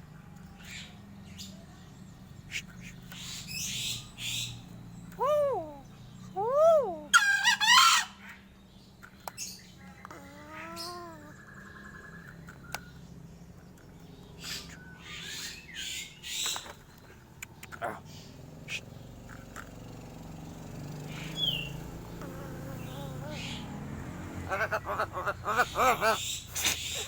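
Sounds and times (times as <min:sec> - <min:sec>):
crow buzzy rattle: 0:21.1 - 0:27.0
crow calling: 0:21.1 - 0:27.0.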